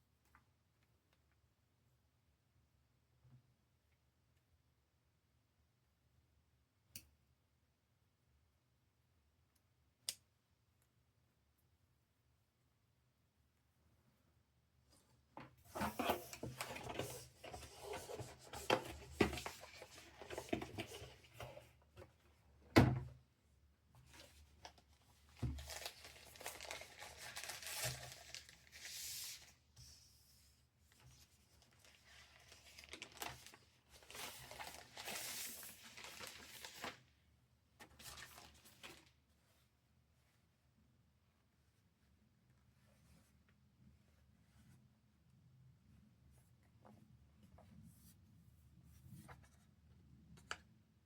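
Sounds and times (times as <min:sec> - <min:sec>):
packaging rustling and tearing: 0:25.5 - 0:29.5, 0:31.8 - 0:37.1, 0:38.0 - 0:39.1.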